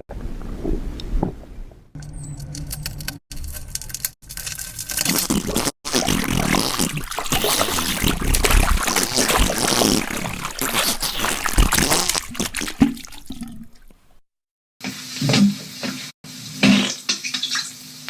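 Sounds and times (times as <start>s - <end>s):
liquid trickling and splattering: 4.3s - 14.2s.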